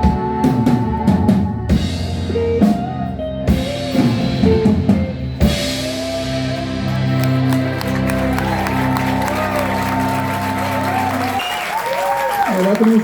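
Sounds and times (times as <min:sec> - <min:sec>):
drum kit beat: 0:00.0 - 0:11.4
guitar melody with pitch bends: 0:01.7 - 0:11.0.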